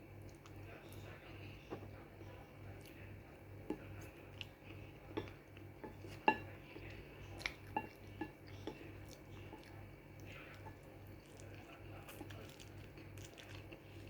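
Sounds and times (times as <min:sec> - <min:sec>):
low steady hum: 0:00.0 - 0:14.0
chopsticks clinking on bowl: 0:05.1 - 0:09.7.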